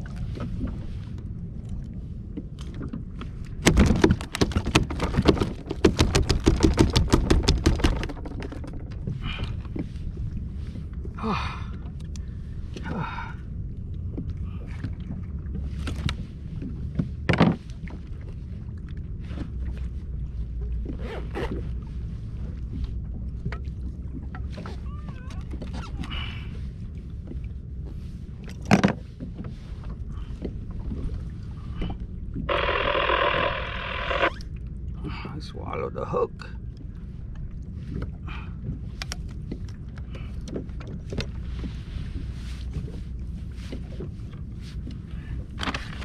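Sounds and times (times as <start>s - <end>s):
wind and water rumble: 0.0s - 46.0s
gear knocking on plastic kayak: 3.6s - 9.5s.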